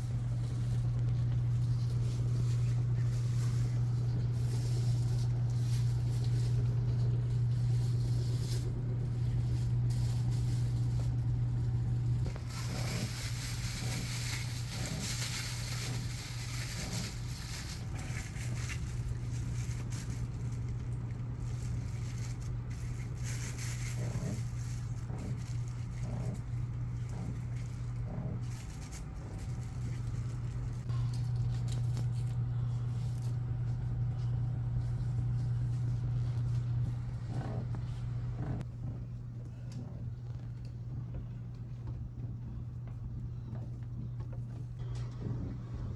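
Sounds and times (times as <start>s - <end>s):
rustles: 0.0s - 40.8s
low mechanical hum: 0.0s - 45.9s.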